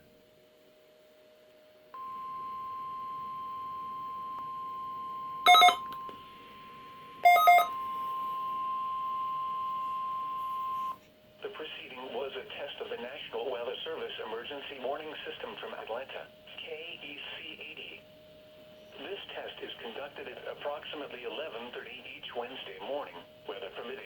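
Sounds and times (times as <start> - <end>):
loud beeping bursts: 5.5 - 5.8, 7.3 - 7.7
steady alarm tone: 5.5 - 5.9, 7.3 - 7.7.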